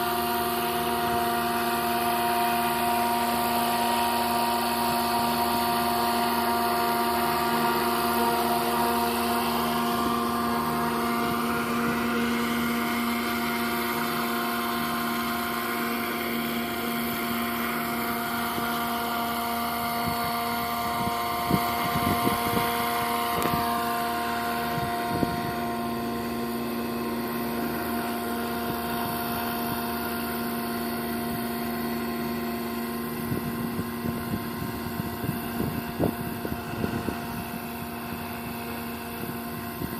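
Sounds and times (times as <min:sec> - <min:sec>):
model helicopter motor whine: 0:00.0 - 0:39.9
wind on microphone: 0:18.3 - 0:27.3, 0:33.1 - 0:39.9.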